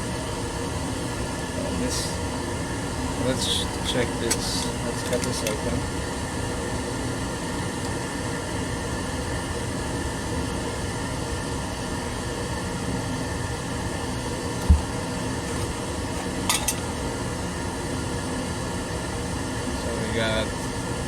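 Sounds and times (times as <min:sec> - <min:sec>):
fan-like mechanical hum: 0:00.0 - 0:21.0
dull knock: 0:14.6 - 0:14.9.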